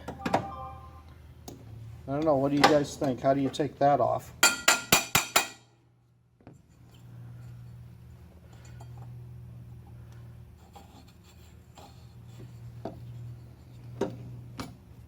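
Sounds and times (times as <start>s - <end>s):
low hum: 0.0s - 2.0s
hand tools scraping engine parts: 10.5s - 14.2s.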